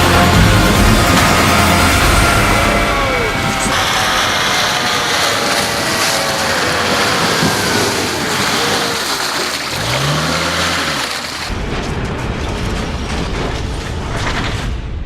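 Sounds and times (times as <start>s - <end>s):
off-road vehicle engine running: 0.0s - 14.4s
wind and road noise: 0.0s - 15.0s.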